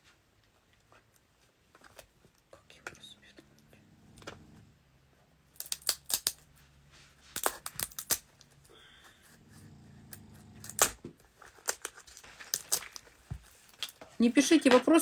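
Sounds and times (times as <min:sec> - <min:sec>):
sharp clicks and crinkling: 0:05.5 - 0:06.6, 0:07.3 - 0:08.7, 0:10.1 - 0:15.0.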